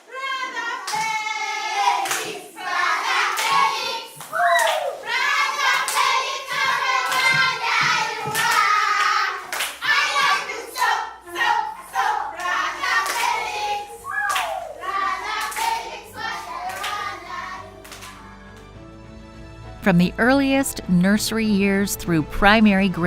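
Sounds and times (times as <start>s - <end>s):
children singing: 0.0s - 18.2s
rhythmic hand clapping: 0.6s - 18.8s.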